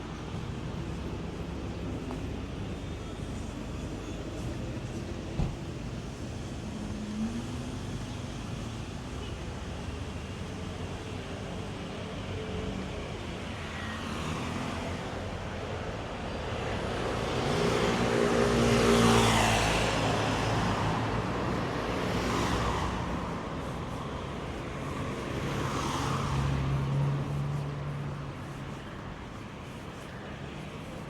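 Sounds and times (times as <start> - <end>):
vehicles passing: 12.3 - 31.0.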